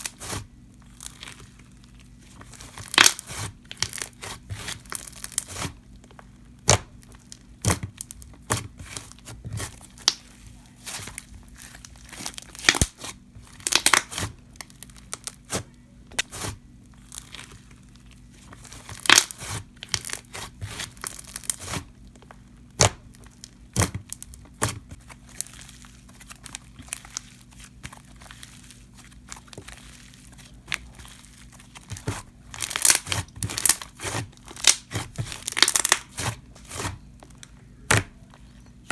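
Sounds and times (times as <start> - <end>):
slime squished by hand: 6.6 - 21.9, 22.7 - 37.0.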